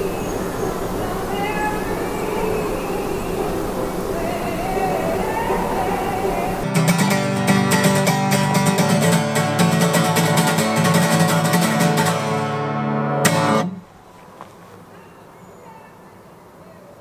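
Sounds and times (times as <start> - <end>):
fast plucked string music: 6.6 - 13.8.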